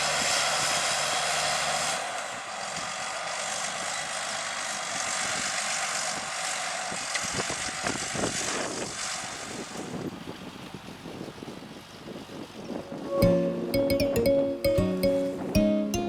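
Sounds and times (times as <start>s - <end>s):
tractor diesel engine droning: 0.0s - 7.6s.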